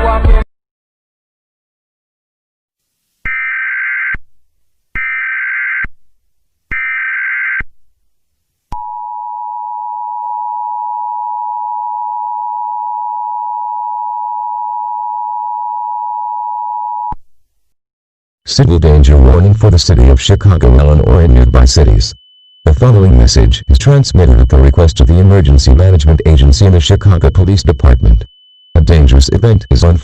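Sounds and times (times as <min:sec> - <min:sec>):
digital data tone bursts: 0:18.5 - 0:30.0
two-tone attention signal: 0:18.9 - 0:30.0.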